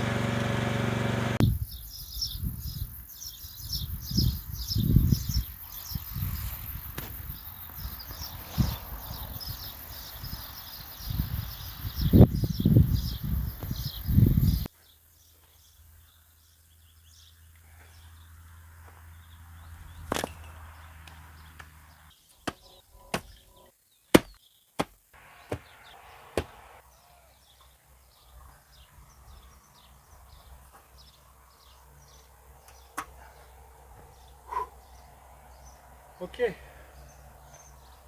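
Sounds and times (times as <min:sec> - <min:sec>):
digging tool striking hard soil: 0:22.5 - 0:23.6, 0:24.2 - 0:26.8.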